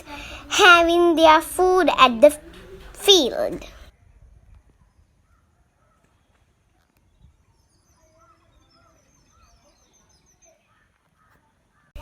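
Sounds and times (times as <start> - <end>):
faint bird chirps: 3.6 - 12.0.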